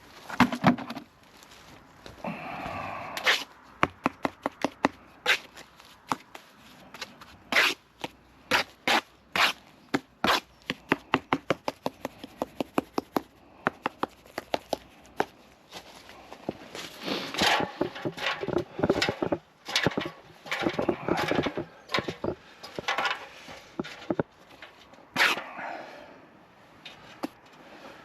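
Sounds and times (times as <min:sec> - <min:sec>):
hard objects clicking and tapping: 0:17.4 - 0:23.2, 0:23.8 - 0:24.3.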